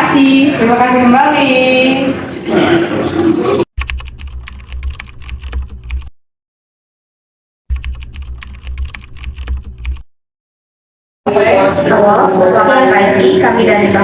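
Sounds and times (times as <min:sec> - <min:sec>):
computer keyboard typing: 0:03.8 - 0:06.1, 0:07.7 - 0:10.1.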